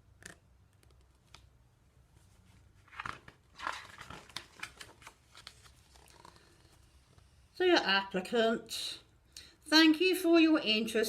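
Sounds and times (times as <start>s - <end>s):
paper page rustling: 2.2s - 6.8s.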